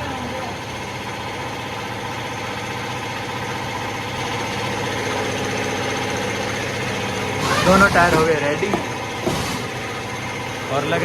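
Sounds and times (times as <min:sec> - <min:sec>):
motor humming: 0:03.9 - 0:11.0.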